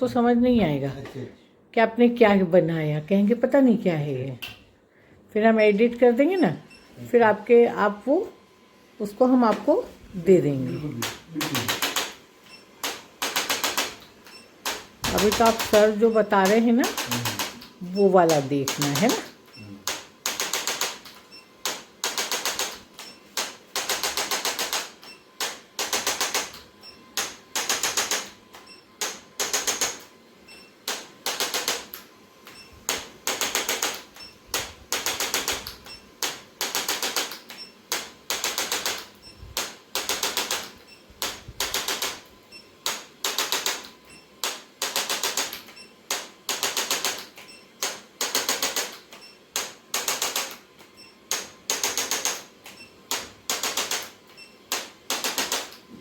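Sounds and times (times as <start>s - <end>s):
rapid mechanical clicking: 12.8s - 17.6s, 18.2s - 26.6s, 27.2s - 28.4s, 29.0s - 30.1s, 30.8s - 32.0s, 32.9s - 50.6s, 51.3s - 55.8s.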